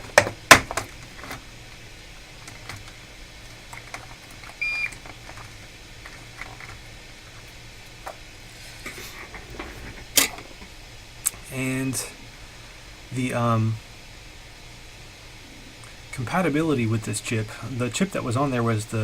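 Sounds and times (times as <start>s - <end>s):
low hum: 3.4s - 17.9s.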